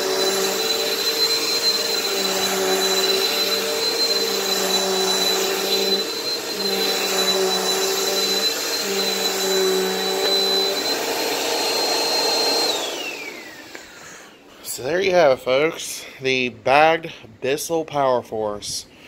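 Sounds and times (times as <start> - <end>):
vacuum motor spinning down: 0.0 - 13.9
vacuum cleaner whine: 0.0 - 15.1.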